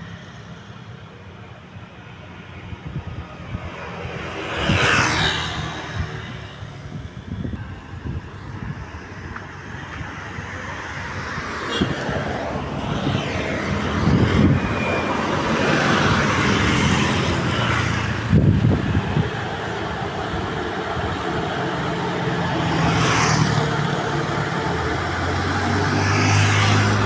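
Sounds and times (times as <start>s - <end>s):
road and traffic noise: 0.0s - 27.0s
bus engine running: 12.6s - 22.8s, 23.4s - 27.0s.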